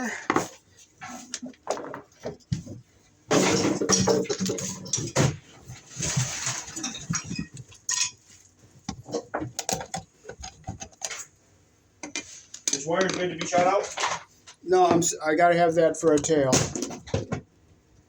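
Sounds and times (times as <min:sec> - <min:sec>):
metal tools clinking and rattling: 0:03.3 - 0:05.2, 0:06.8 - 0:08.2.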